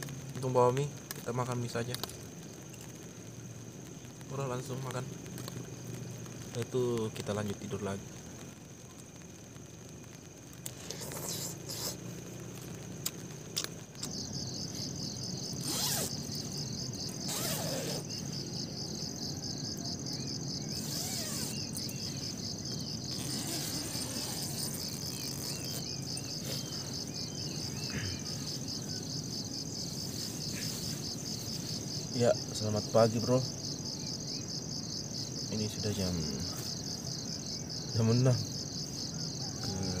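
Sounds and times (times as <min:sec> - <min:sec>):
crickets trilling: 0:00.0 - 0:40.0
low rumble of wind or rain: 0:00.0 - 0:40.0.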